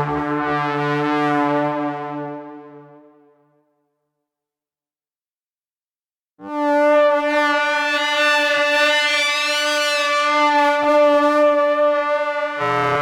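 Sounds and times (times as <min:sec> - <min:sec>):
long brassy horn blast: 0:12.6 - 0:13.0.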